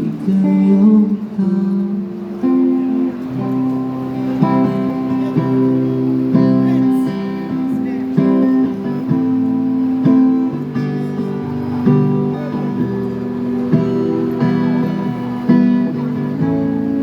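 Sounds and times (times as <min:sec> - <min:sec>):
acoustic guitar strumming chords: 0:00.0 - 0:17.0.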